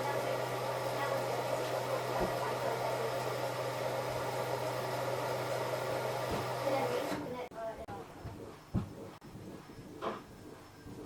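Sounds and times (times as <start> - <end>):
washing machine running: 0.0 - 7.5.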